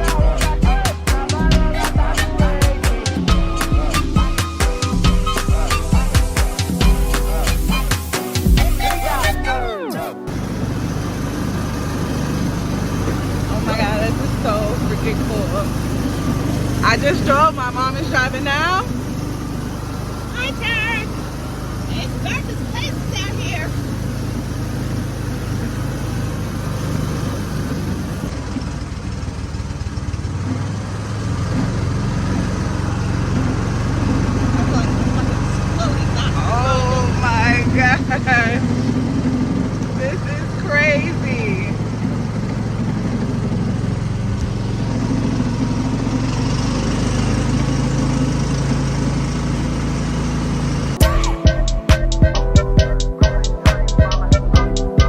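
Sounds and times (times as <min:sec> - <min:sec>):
music with hard drum beat: 0:00.0 - 0:09.6, 0:51.0 - 0:55.0
atv engine running: 0:00.0 - 0:55.0.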